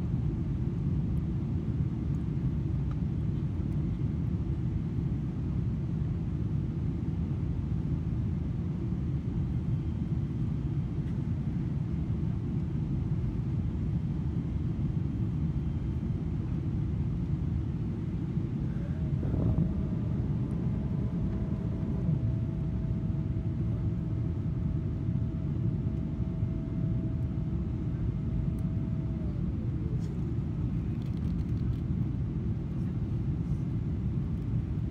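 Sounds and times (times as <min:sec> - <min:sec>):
low rumble of engines and airflow: 0:00.0 - 0:34.9
aircraft whine: 0:08.1 - 0:34.9.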